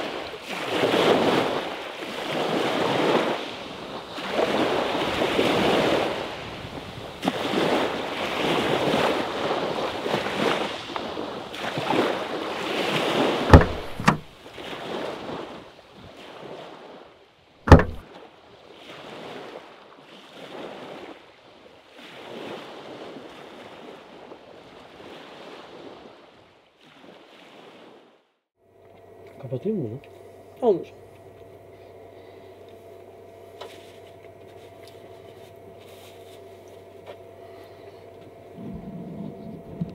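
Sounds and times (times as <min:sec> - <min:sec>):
small waves washing onto shore: 0:00.0 - 0:28.2
sharp knocks: 0:13.5 - 0:14.3, 0:17.7 - 0:18.0.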